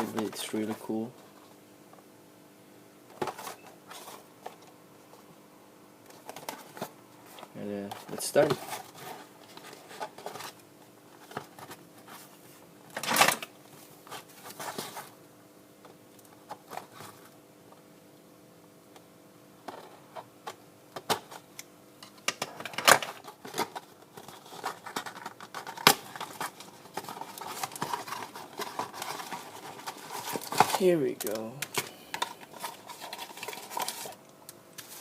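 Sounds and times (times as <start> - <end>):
packaging being opened by hand: 12.9 - 15.1, 22.3 - 35.0
packaging tearing: 23.5 - 34.2.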